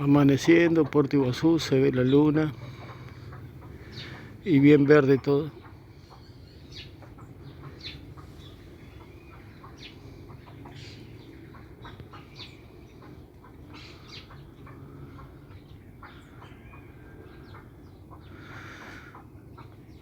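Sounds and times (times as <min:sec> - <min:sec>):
birds chirping and calling: 0:00.0 - 0:20.0
steady low rumble: 0:01.7 - 0:04.5.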